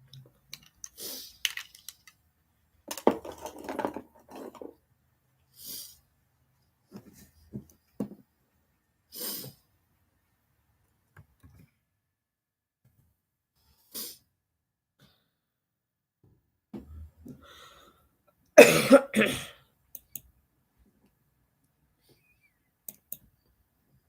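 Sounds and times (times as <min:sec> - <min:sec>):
person coughing: 0:18.6 - 0:19.6.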